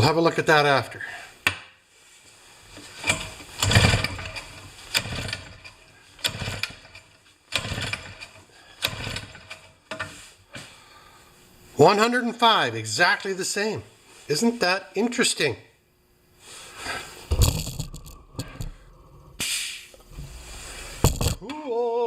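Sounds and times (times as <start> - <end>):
engine cranked by pull-starter: 2.9 - 9.7.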